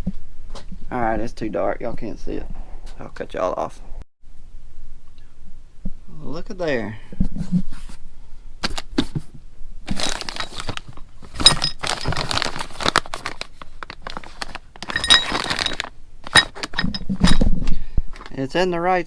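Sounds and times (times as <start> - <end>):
metal parts clattering: 9.9 - 17.5, 18.1 - 18.4.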